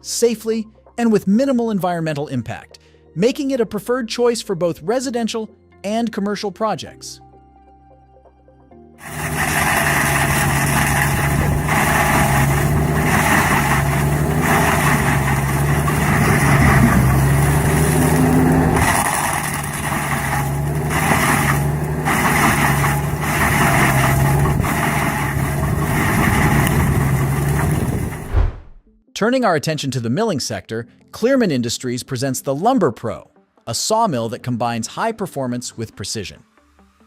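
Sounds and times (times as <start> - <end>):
diesel engine running under load: 9.0 - 28.3
rough cutting or grinding noise: 9.0 - 28.8.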